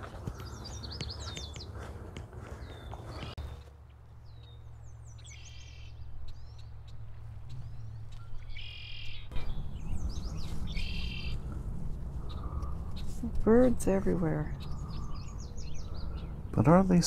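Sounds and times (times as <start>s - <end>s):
small birds chattering: 0.0s - 3.6s, 4.2s - 11.5s, 12.2s - 17.0s
steady low rumble: 4.0s - 17.0s.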